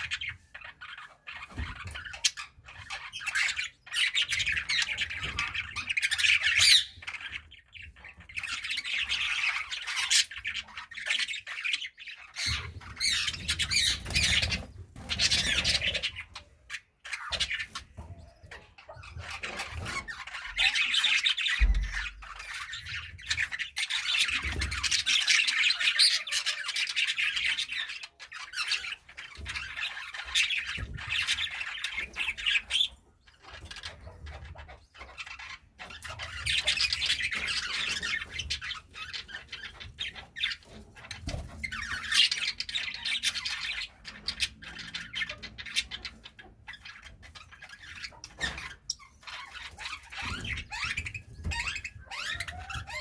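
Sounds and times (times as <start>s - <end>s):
budgerigars chattering and chirping: 0.0s - 53.0s.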